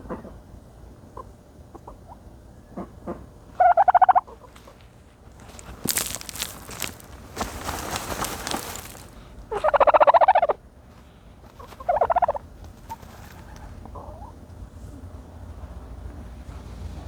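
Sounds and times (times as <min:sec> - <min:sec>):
turkey gobbling: 0:01.2 - 0:04.8, 0:08.0 - 0:10.6, 0:11.6 - 0:14.4
rustling of dirt: 0:04.3 - 0:09.8.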